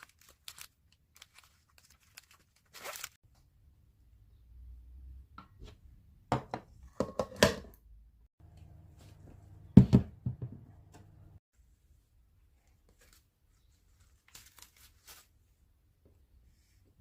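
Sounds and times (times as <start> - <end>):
cookware knocking and clattering: 6.3 - 7.8.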